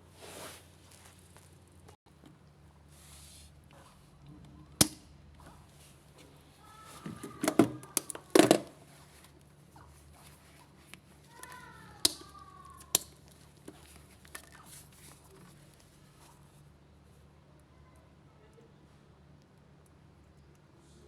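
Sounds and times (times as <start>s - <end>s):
clicks and knocks of parts: 7.0s - 8.8s.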